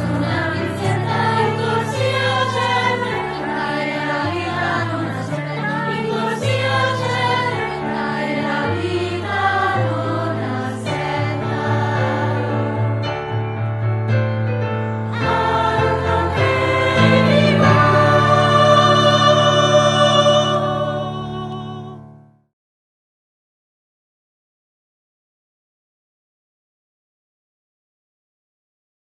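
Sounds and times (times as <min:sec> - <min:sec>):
children's choir singing: 0:00.0 - 0:13.2, 0:15.1 - 0:22.0.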